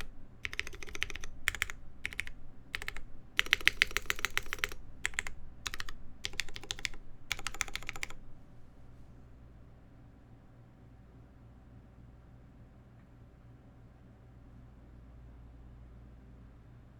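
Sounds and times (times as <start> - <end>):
mechanical keyboard typing: 0.0 - 8.7.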